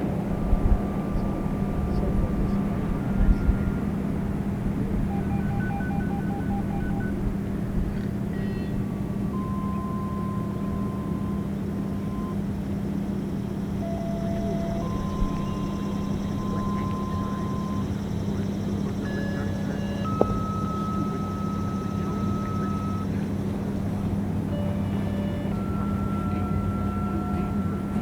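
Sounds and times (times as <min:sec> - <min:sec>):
distant electronic siren tone: 0:00.4 - 0:28.0
faint rapid beeping: 0:00.6 - 0:28.0.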